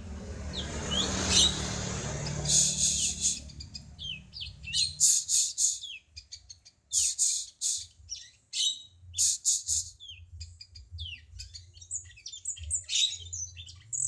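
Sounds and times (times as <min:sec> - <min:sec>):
songbird chirping and whistling: 0:00.5 - 0:14.0.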